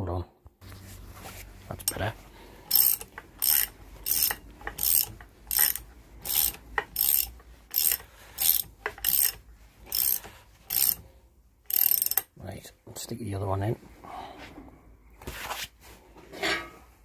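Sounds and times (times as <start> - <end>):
ratchet wrench clicking: 1.8 - 2.0, 2.7 - 11.0, 11.7 - 12.3.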